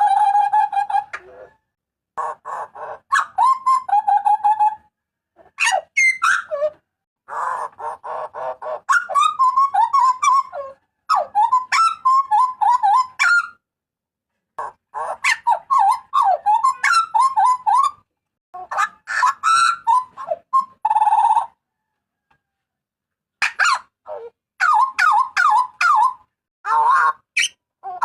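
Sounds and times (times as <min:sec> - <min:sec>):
butcherbird calling: 0:05.6 - 0:13.6, 0:14.6 - 0:18.0, 0:18.6 - 0:21.6, 0:23.4 - 0:28.0.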